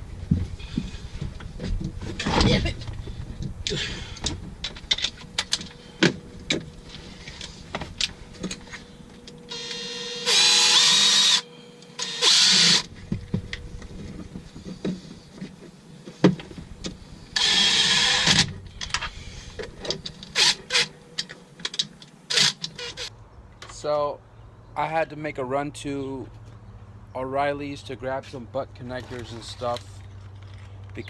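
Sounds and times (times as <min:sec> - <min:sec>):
electric power tool whirring: 0:08.4 - 0:12.9, 0:17.2 - 0:19.2, 0:20.2 - 0:21.0.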